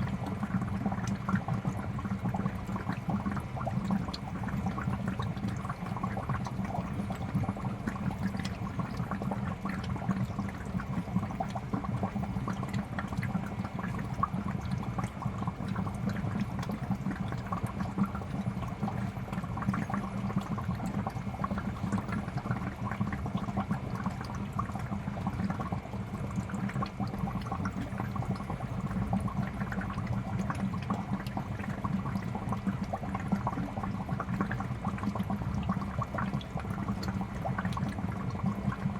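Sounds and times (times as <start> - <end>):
water bubbling and gurgling: 0.0 - 38.9.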